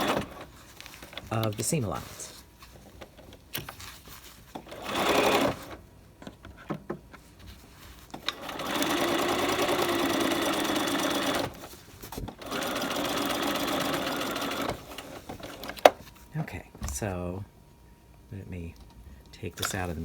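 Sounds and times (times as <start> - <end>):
sewing machine stitching: 0.0 - 0.6, 4.6 - 5.8, 8.2 - 11.7, 12.3 - 16.0.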